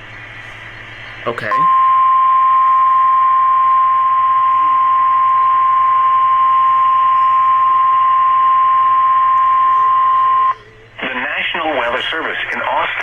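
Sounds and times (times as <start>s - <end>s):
steady loud alert tone: 1.3s - 10.6s.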